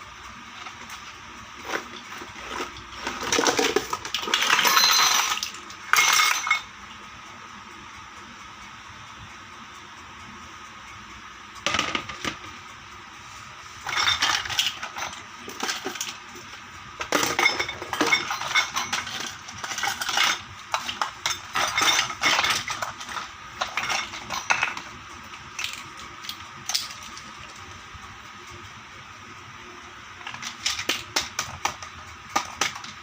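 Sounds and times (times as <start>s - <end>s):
toy dishes clinking: 1.6s - 6.7s, 13.8s - 27.6s.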